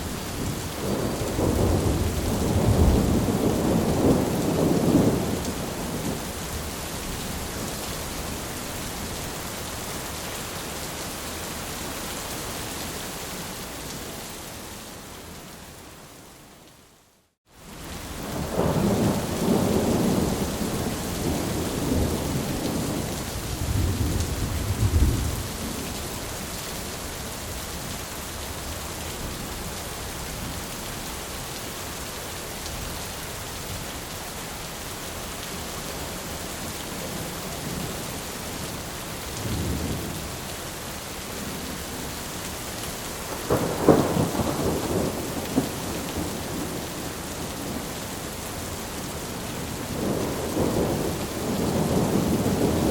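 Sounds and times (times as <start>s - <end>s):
rolling thunder rumble: 0.0s - 7.7s, 18.3s - 25.9s, 43.5s - 47.9s, 49.7s - 52.9s
heavy rain falling: 0.0s - 16.5s, 17.5s - 52.9s.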